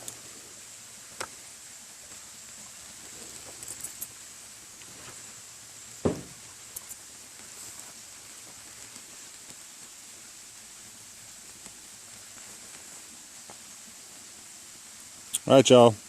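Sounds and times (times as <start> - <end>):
sharp knock: 6.0 - 6.4.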